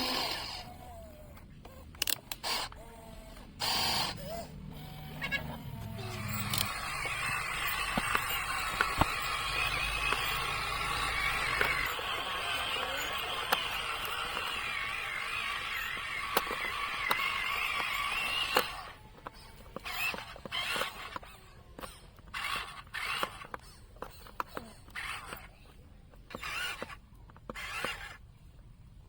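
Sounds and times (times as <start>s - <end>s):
toy motor whining: 0.0s - 28.6s
sharp clicks: 5.8s - 25.5s
plastic scraping: 6.0s - 21.2s.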